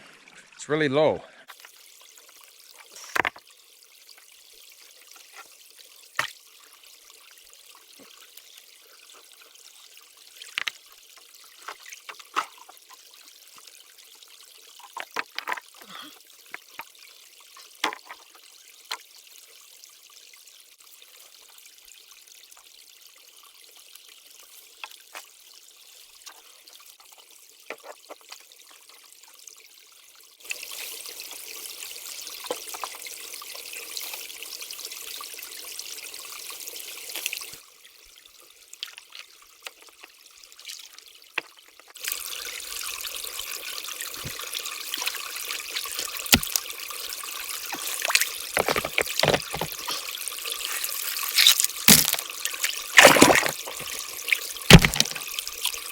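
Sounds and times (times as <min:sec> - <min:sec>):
creek water trickling over stones: 0:01.4 - 0:55.9
stones knocking and splashing: 0:02.8 - 0:03.4, 0:11.6 - 0:13.0, 0:14.8 - 0:16.9, 0:17.6 - 0:19.0, 0:27.7 - 0:28.4, 0:44.2 - 0:44.4, 0:45.8 - 0:46.7, 0:47.7 - 0:50.0, 0:51.3 - 0:54.0, 0:54.7 - 0:55.3
sticks and stones clicking: 0:46.3 - 0:46.6, 0:47.8 - 0:49.8, 0:51.3 - 0:52.3, 0:53.0 - 0:54.0, 0:54.7 - 0:55.2.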